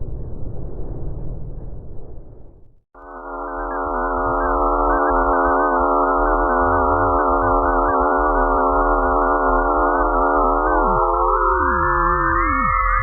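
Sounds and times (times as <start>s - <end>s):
low rumble: 0.0s - 2.8s
electronic drone of sine tones: 3.0s - 13.0s.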